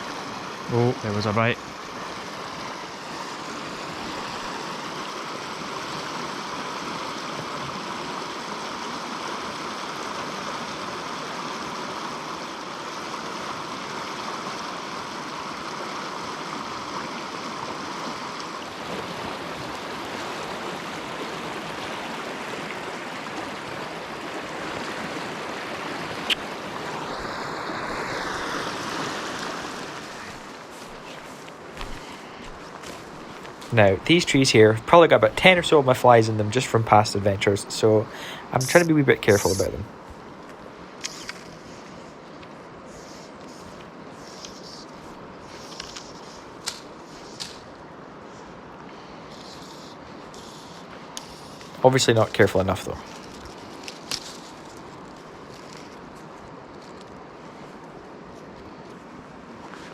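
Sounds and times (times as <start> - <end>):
river water rushing and rippling: 0.0 - 59.9
sharp click: 41.0 - 41.5.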